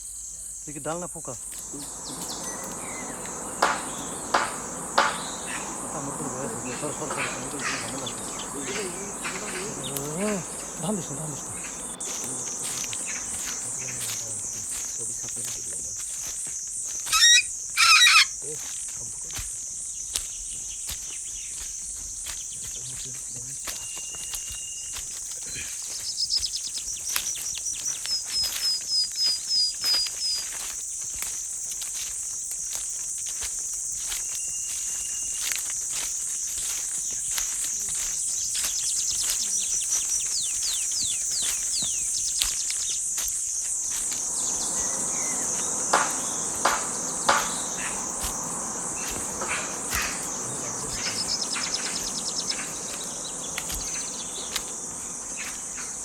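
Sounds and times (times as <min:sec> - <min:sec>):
jungle insects chorus: 0:00.0 - 0:56.0
bird calling repeated notes: 0:01.4 - 0:14.9, 0:17.0 - 0:18.4, 0:44.1 - 0:56.0
short bird calls: 0:01.4 - 0:15.0, 0:17.0 - 0:18.4, 0:44.2 - 0:56.0
sharp knocks: 0:01.8 - 0:11.1, 0:45.5 - 0:50.4.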